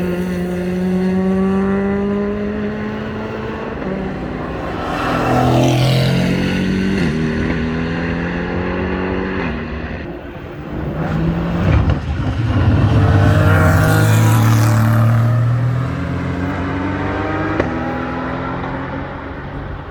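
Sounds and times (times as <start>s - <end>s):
race car engines passing: 0.0s - 19.9s.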